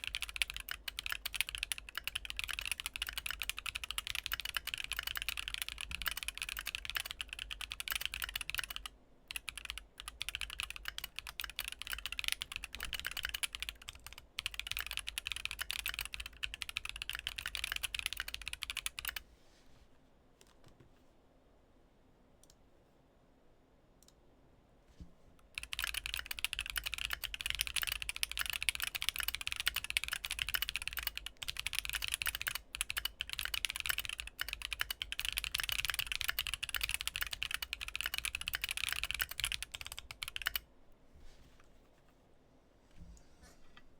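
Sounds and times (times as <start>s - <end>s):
mechanical keyboard typing: 0.0s - 19.2s, 25.5s - 40.7s.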